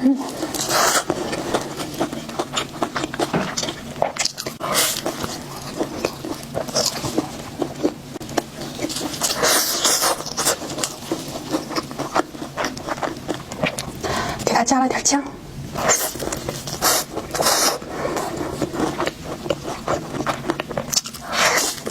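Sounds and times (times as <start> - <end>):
chewing fried chicken: 0.0 - 14.6, 15.7 - 21.9.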